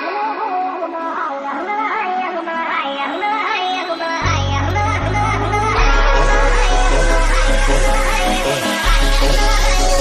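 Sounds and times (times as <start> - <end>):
electronic funk music: 4.1 - 10.0
heavy bass: 4.2 - 10.0.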